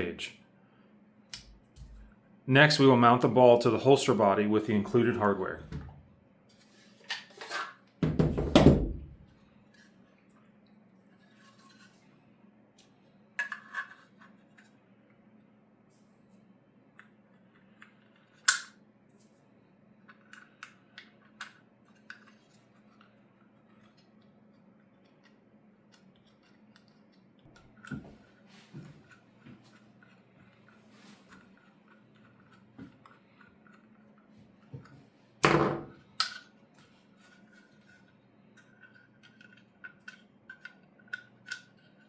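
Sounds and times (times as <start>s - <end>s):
faint steady hum: 0.0s - 8.0s.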